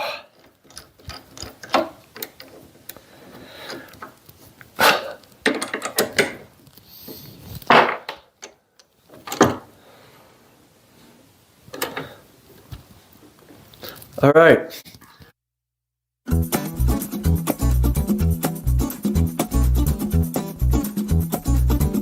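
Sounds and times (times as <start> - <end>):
metal parts clattering: 0.3 - 2.7
metal tools knocking and clicking: 0.4 - 2.6, 5.4 - 6.4.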